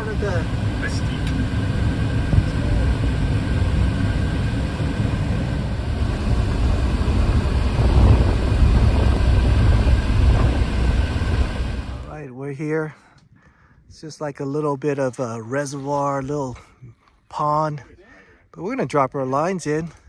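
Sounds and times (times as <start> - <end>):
car road and engine rumble: 0.0 - 12.2.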